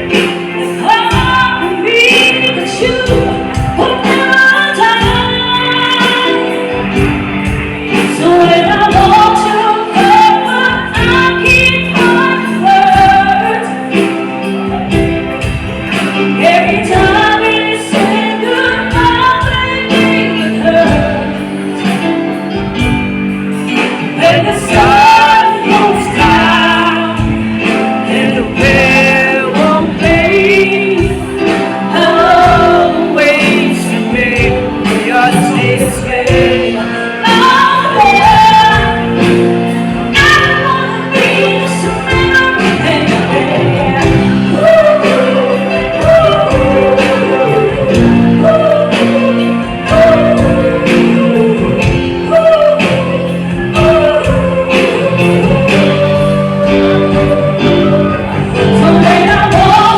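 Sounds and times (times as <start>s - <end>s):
live band playing: 0.0s - 59.9s
steady drum beat: 0.0s - 59.9s
woman singing: 0.0s - 59.9s.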